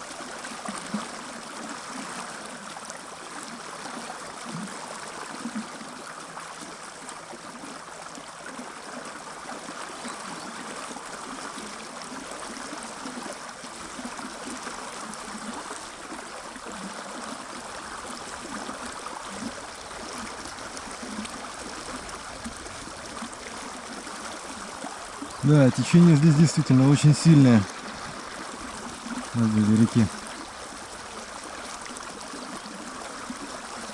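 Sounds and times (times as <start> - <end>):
fast-flowing river rushing: 9.0 - 33.9.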